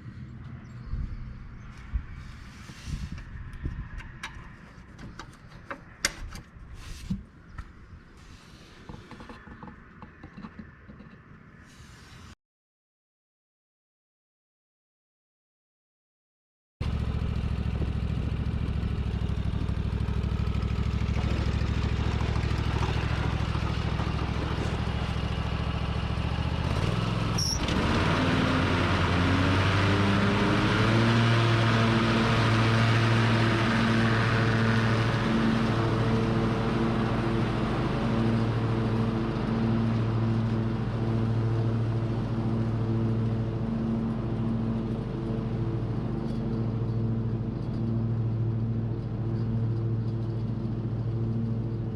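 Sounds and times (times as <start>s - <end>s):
lawn tractor engine running: 16.8s - 51.9s.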